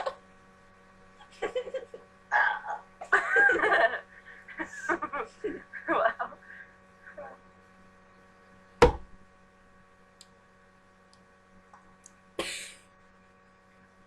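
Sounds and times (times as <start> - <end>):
electrical hum: 0.0 - 14.0
sharp thump: 8.8 - 9.2.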